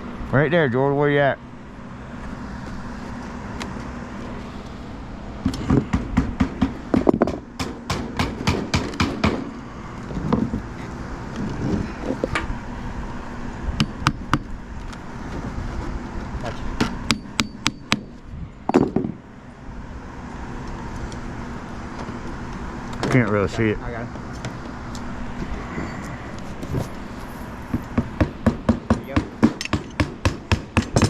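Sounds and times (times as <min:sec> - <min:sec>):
hammer blows: 0:05.4 - 0:09.6.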